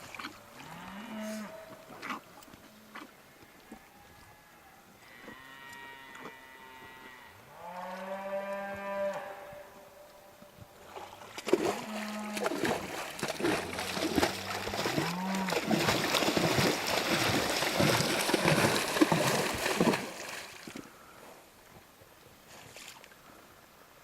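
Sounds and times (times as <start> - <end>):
water splashing and sloshing: 10.7 - 21.1.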